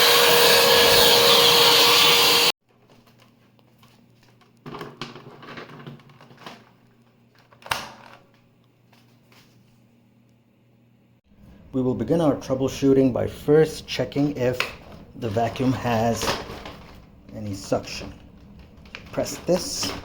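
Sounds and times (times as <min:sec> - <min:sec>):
vacuum cleaner running: 0:00.0 - 0:02.5.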